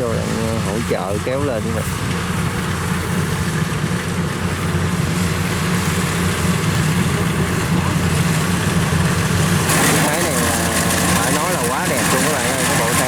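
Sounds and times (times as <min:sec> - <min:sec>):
combine harvester diesel engine running: 0:00.0 - 0:13.0.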